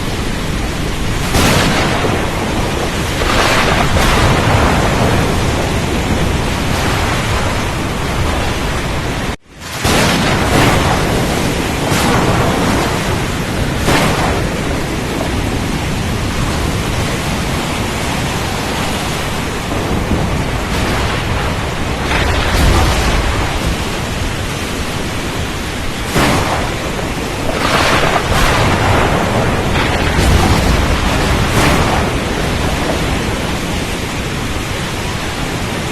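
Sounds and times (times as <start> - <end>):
rain: 0.0 - 35.9
waves: 0.0 - 35.9
wind: 0.0 - 35.9.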